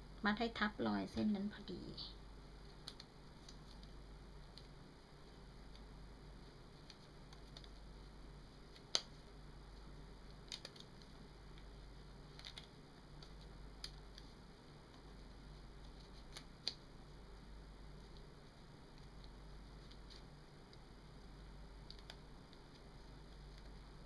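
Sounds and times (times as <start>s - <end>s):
cloth clicks and snaps: 8.7s - 9.2s.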